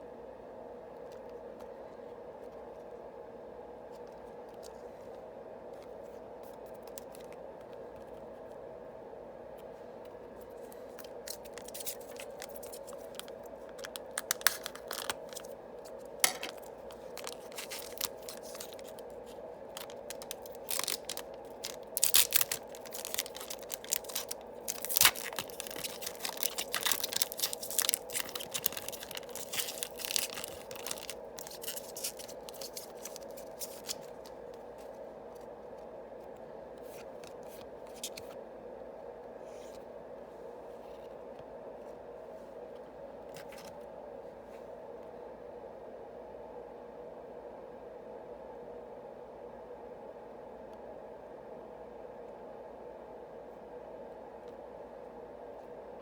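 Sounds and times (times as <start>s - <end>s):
steady hum: 0.0s - 56.0s
wrapper crinkling and tearing: 10.9s - 34.3s.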